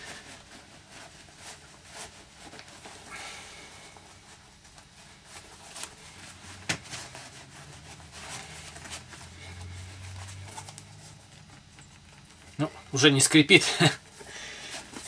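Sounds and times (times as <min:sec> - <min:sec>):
hands rustling and handling: 0:00.0 - 0:15.0.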